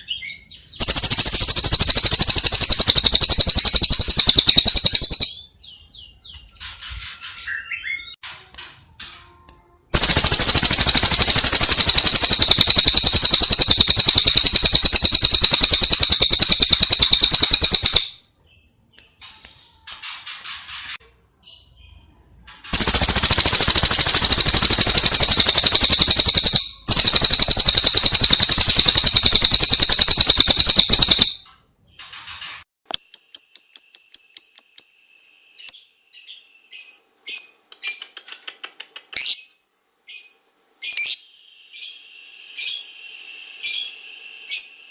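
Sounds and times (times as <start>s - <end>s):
short high bird chirps: 0.8s - 5.5s.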